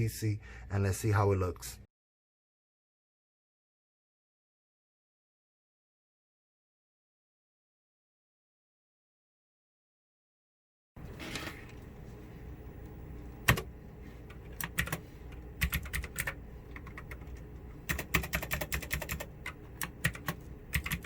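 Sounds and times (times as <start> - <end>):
low steady hum: 11.0 - 21.0.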